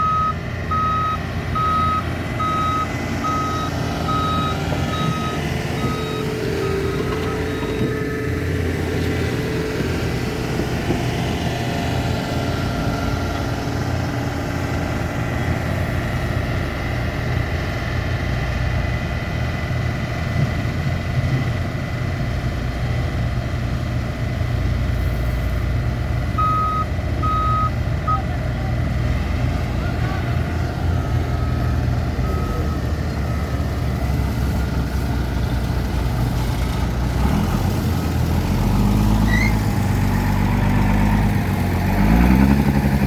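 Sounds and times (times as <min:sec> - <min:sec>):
reversing alarm beeps: 0:00.0 - 0:08.0, 0:26.4 - 0:28.3, 0:30.9 - 0:33.9
heavy machinery engines running: 0:00.0 - 0:43.0.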